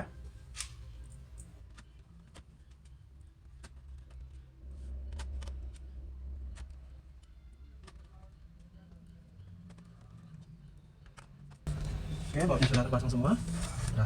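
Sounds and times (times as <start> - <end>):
handling rumble: 11.7 - 14.0.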